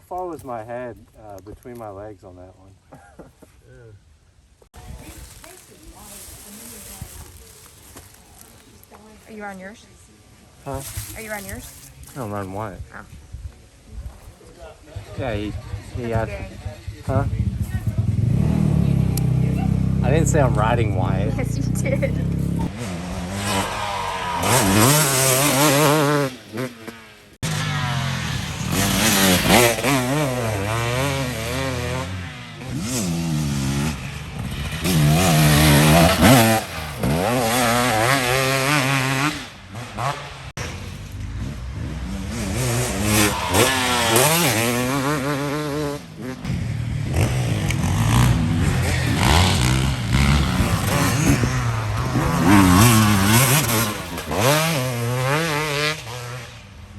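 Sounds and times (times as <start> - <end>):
dirt bike engine revving: 15.0 - 56.9.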